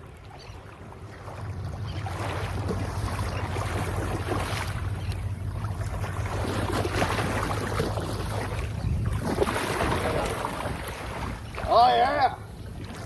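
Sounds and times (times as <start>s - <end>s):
wind noise on microphone: 8.3s - 13.0s.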